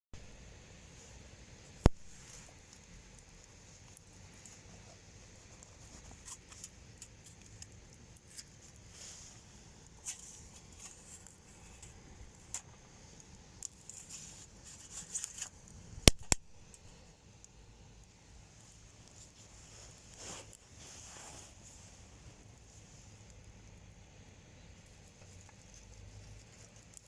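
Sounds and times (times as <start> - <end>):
wood fire crackling: 0.2 - 27.0
sharp loud snaps: 1.8 - 2.2, 16.0 - 16.8.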